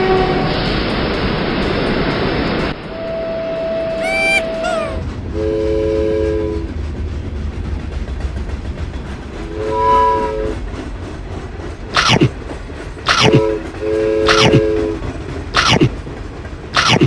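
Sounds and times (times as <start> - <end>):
train horn chord: 0.0 - 0.6, 2.8 - 4.7, 5.3 - 6.7, 9.5 - 10.6, 13.3 - 15.1
train rumble: 0.0 - 17.0
high whistle: 12.0 - 12.3, 13.1 - 13.6, 14.2 - 14.8, 15.6 - 15.9, 16.8 - 17.0.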